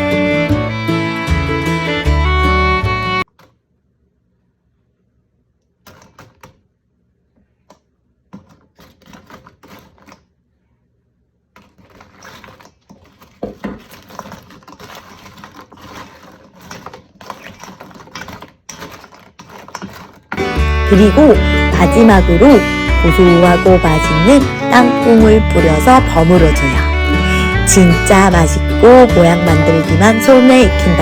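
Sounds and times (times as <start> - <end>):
pastries rattling in a bowl: 11.6 - 20.4.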